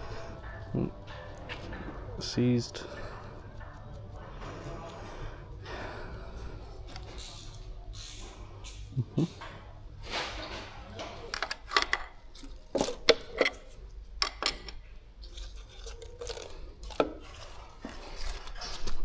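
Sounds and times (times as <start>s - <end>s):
metal parts clinking and knocking: 11.0s - 19.0s.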